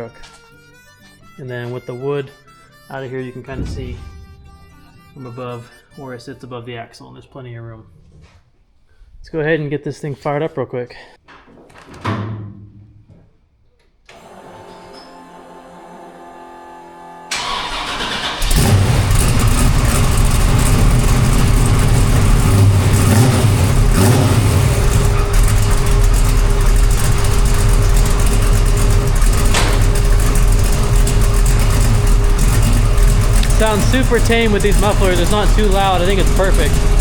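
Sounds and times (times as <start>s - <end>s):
car engine idling: 17.3s - 37.0s
engine cranking: 17.3s - 37.0s.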